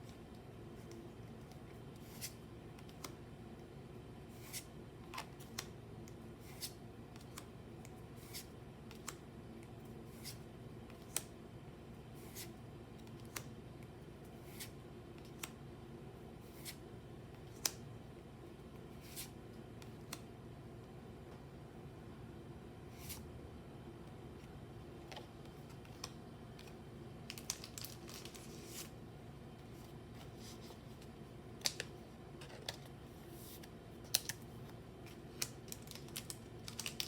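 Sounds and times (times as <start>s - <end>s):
faint steady hum: 0.0s - 37.0s.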